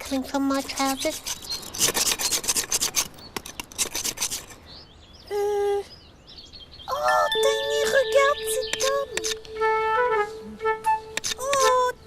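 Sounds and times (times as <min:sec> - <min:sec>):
fast rhythmic rasping scrape: 0:00.6 - 0:04.5.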